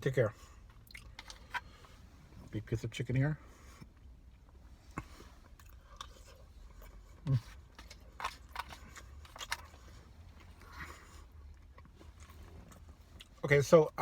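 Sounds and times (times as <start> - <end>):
man chewing with mouth smacks: 0.7 - 2.0, 3.8 - 13.4.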